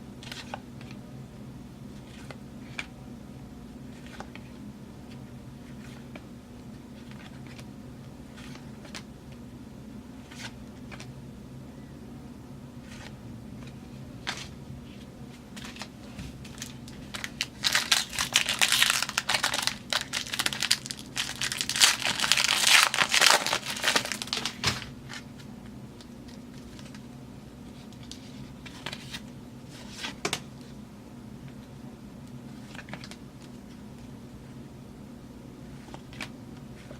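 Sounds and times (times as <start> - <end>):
low steady hum: 0.0 - 36.9
foil wrapper tearing and crinkling: 16.5 - 25.2.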